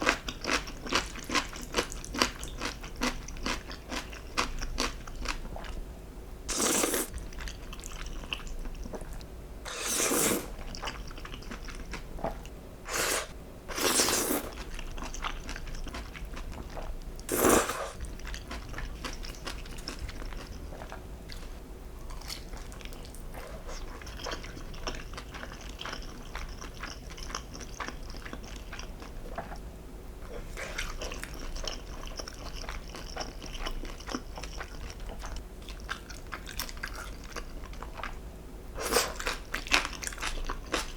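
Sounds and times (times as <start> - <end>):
slurps: 6.5 - 7.1, 9.7 - 10.6, 12.9 - 14.6, 17.3 - 18.0
chewing and crunchy bites: 13.7 - 29.5, 38.8 - 40.9.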